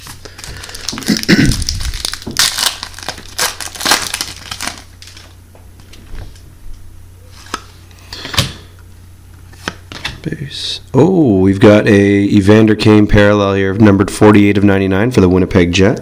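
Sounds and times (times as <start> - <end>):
wrapper crinkling: 0.0 - 5.4.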